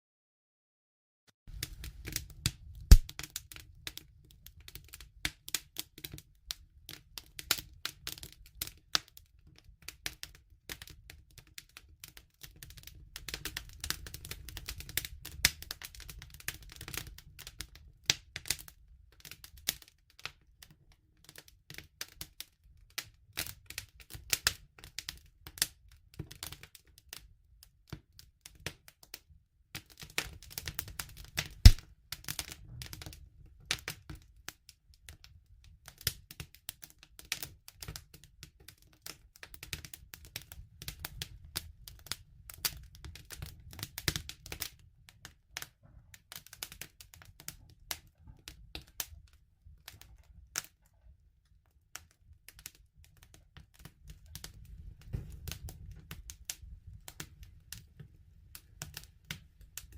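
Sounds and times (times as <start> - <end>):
campfire wood crackling: 1.5 - 9.1, 9.8 - 19.8, 29.8 - 34.2.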